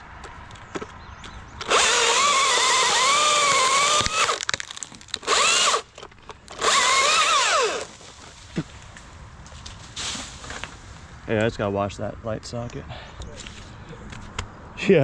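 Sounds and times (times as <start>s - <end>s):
chainsaw cutting: 1.6s - 5.9s, 6.5s - 8.3s.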